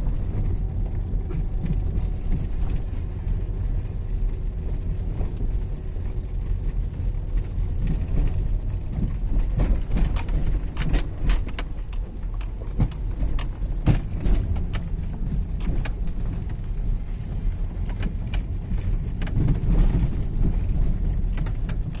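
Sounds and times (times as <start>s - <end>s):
car road and engine rumble: 0.0s - 22.0s
sharp knocks and rattles: 7.8s - 22.0s.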